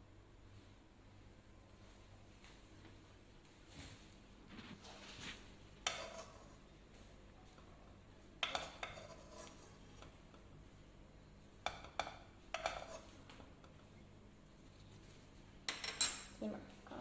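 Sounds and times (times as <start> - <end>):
metal spoon clinking against dishes: 15.7 - 16.4.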